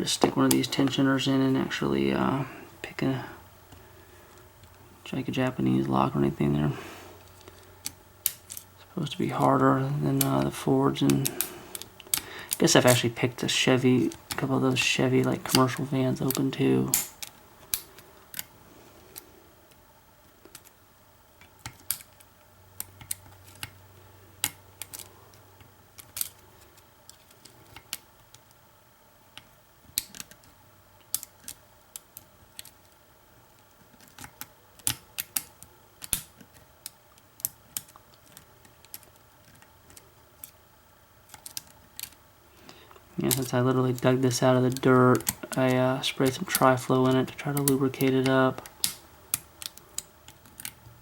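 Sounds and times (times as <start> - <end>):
lock picking clicks and taps: 48.6 - 50.8.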